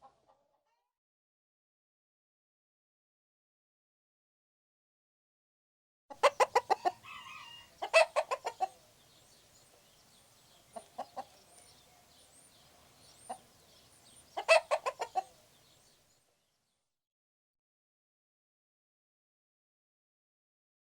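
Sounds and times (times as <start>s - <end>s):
hen clucking: 6.1s - 15.8s.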